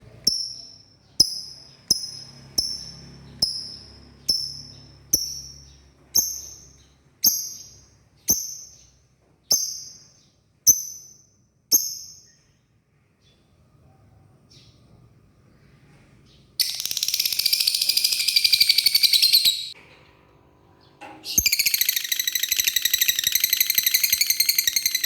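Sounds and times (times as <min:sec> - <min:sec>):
lovebird high-pitched chirps: 0:00.2 - 0:12.6, 0:16.6 - 0:19.8, 0:21.2 - 0:25.0.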